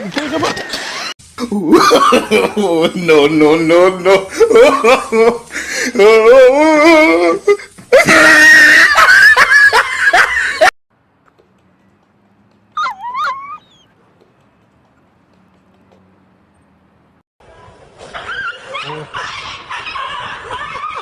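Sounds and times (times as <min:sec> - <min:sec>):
dog warbling vocalizing: 0:12.8 - 0:13.9
shrill cries: 0:12.8 - 0:13.9.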